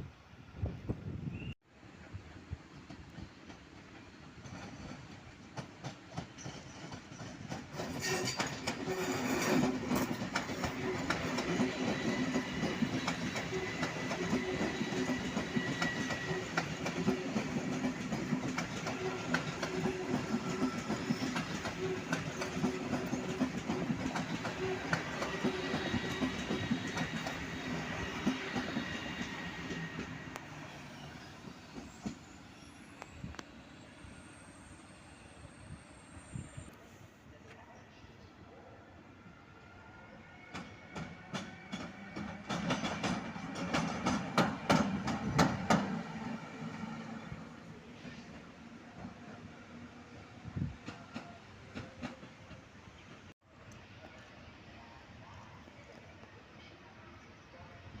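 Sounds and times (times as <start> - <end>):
train wheels clicking over rail joints: 2.7 - 30.6, 40.5 - 46.2.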